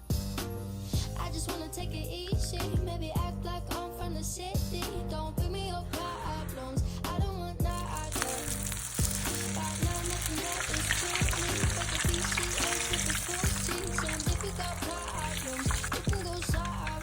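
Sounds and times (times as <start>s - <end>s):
background music with steady beat: 0.0s - 17.0s
food deep-frying in hot oil: 7.7s - 17.0s.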